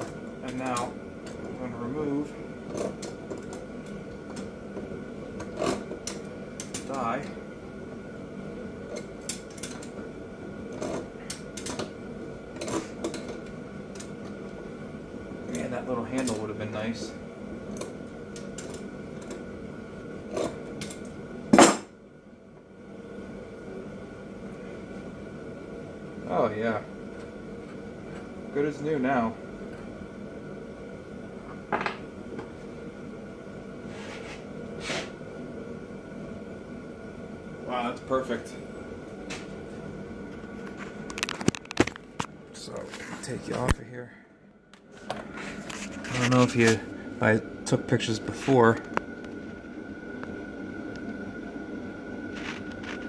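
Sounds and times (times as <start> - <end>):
steady background hum: 0.0 - 53.0
soft scrapes: 33.8 - 35.2.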